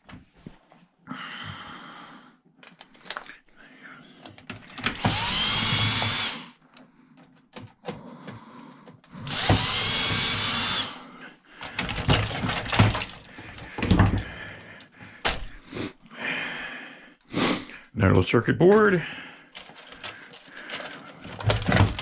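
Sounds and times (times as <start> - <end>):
cordless drill whining: 4.8 - 6.6, 9.1 - 11.2
clatter of parts being handled: 11.6 - 14.3, 19.5 - 22.0.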